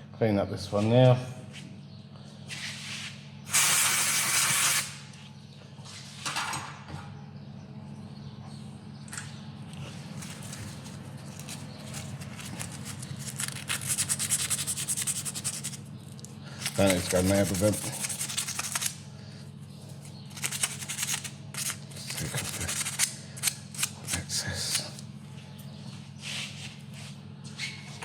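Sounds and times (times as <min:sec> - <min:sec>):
steady low hum: 0:00.0 - 0:28.0
fast rubbing strokes: 0:10.4 - 0:15.9, 0:16.6 - 0:19.0, 0:20.3 - 0:23.1.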